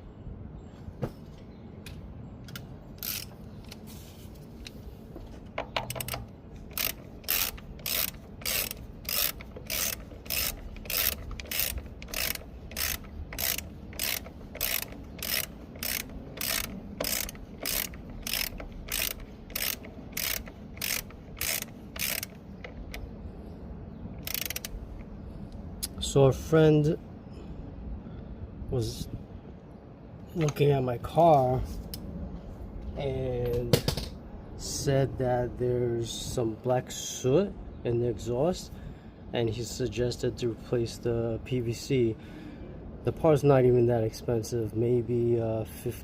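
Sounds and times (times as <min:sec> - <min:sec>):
socket ratchet clicking: 0:02.5 - 0:03.8, 0:05.6 - 0:23.1, 0:24.2 - 0:25.1.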